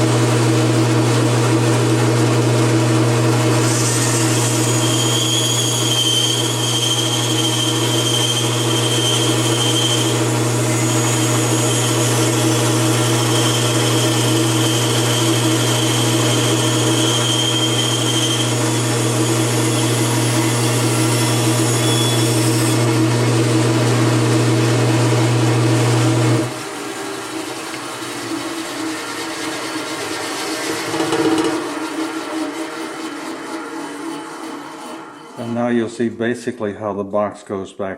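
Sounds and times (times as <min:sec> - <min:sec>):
bandsaw motor hum: 0:00.0 - 0:35.7
saw blade cutting wood: 0:03.5 - 0:23.0, 0:27.8 - 0:35.7.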